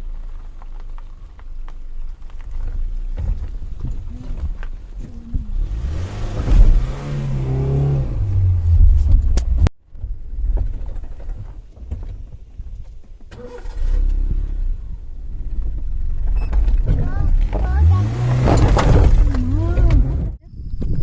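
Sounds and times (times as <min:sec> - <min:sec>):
vehicle engine revving: 0:00.0 - 0:09.7, 0:13.3 - 0:20.4.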